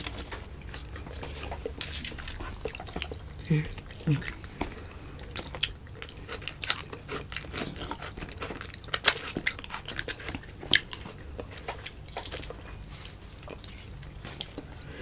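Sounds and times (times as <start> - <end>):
chewing and lip-smacking: 0.0 - 15.0.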